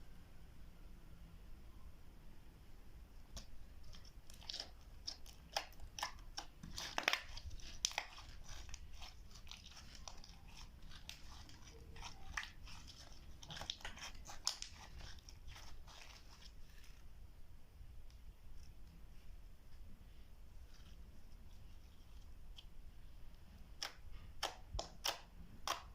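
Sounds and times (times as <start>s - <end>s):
slime kneaded by hand: 3.2s - 17.1s, 20.6s - 25.9s.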